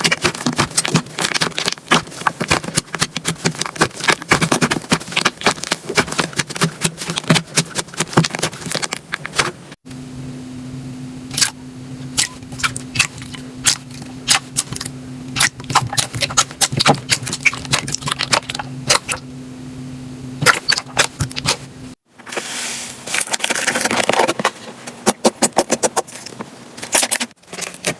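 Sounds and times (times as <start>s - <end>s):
slime squishing and crackling: 0.0s - 9.6s, 12.2s - 19.2s, 20.4s - 21.6s
low steady hum: 0.0s - 25.0s.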